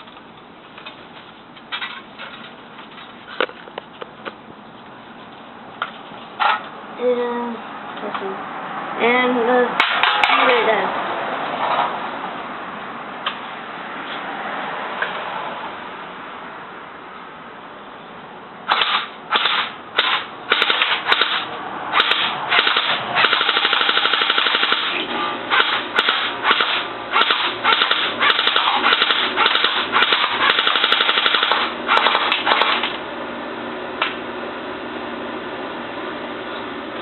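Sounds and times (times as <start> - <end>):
steady hum: 15.6 - 37.0
airsoft gun firing: 18.7 - 32.9.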